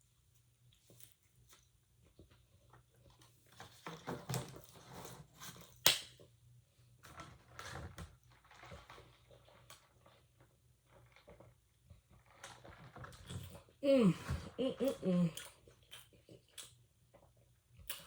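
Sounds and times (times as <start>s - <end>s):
quiet chewing with crackles: 14.8s - 18.0s.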